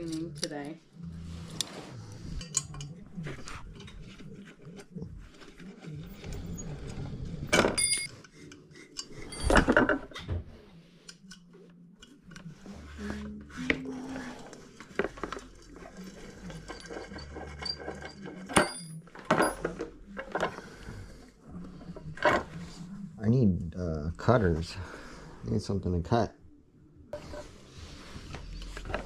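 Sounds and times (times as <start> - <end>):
metal parts and tools clinking: 0.0 - 0.8, 2.2 - 5.0, 5.7 - 10.2, 14.2 - 20.6
handling and rubbing: 27.2 - 29.0.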